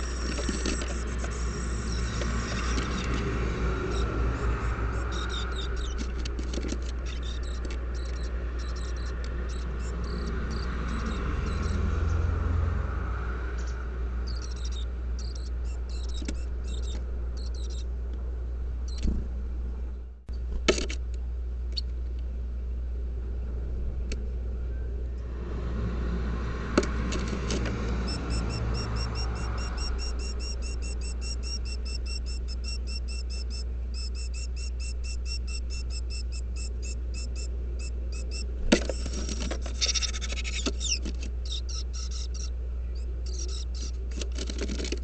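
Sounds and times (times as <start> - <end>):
sharp clicks: 0.0 - 3.3, 5.0 - 11.8
small birds chirping: 0.0 - 12.5, 13.4 - 17.9, 27.6 - 44.8
steady low hum: 0.0 - 45.0.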